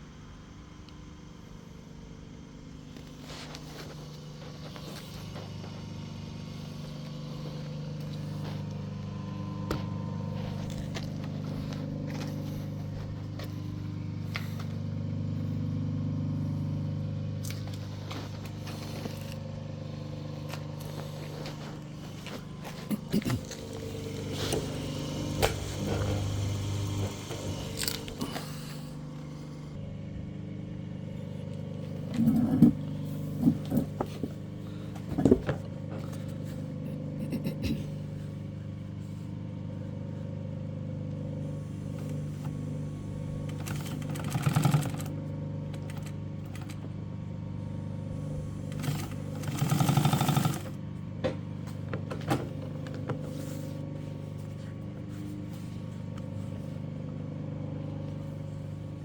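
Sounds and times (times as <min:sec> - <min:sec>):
sewing machine motor humming: 0:02.7 - 0:37.2, 0:37.9 - 0:59.0
fast machine stitching: 0:17.4 - 0:29.7, 0:41.3 - 0:46.9, 0:47.9 - 0:50.8.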